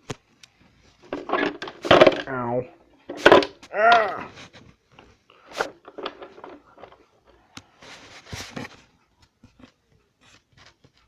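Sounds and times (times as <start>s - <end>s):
objects clicking and tapping: 0.0s - 2.3s, 3.0s - 7.7s
rustling scrapes: 4.2s - 9.0s.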